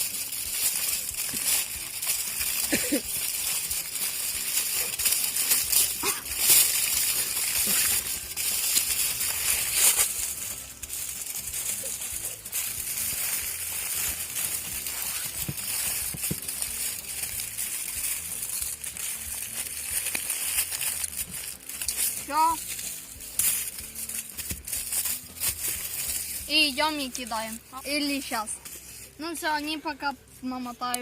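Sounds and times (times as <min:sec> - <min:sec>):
aluminium foil crinkling: 0:00.0 - 0:31.0
sharp crackles of foil: 0:00.0 - 0:31.0.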